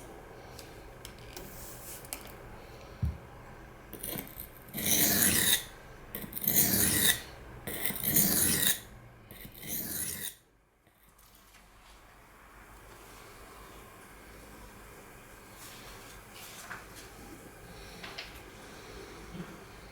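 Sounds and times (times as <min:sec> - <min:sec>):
knife grinding on sharpening stone: 0:04.0 - 0:10.4.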